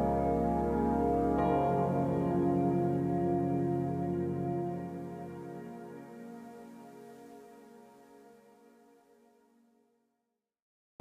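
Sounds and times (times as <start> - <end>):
soft held chords: 0.0 - 8.6.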